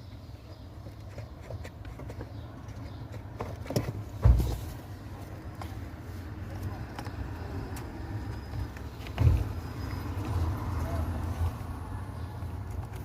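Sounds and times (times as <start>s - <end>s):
thump: 4.2s - 4.6s.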